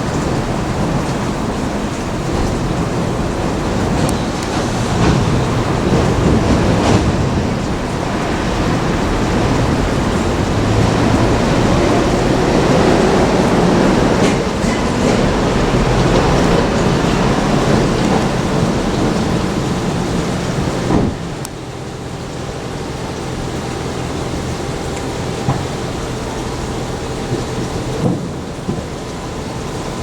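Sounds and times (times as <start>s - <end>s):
train rumbling on rails: 0.0s - 30.0s
faint clicks of rails: 3.7s - 8.4s, 11.8s - 21.6s.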